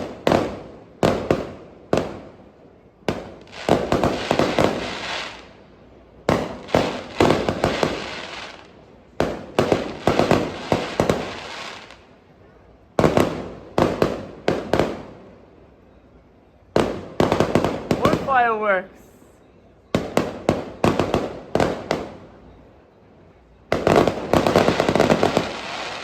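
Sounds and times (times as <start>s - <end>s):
fireworks bangs: 0.0s - 12.1s, 12.9s - 15.4s, 16.7s - 18.9s, 19.8s - 26.0s
fireworks crackle: 0.0s - 12.3s, 16.7s - 19.3s, 19.9s - 22.7s, 23.3s - 26.0s.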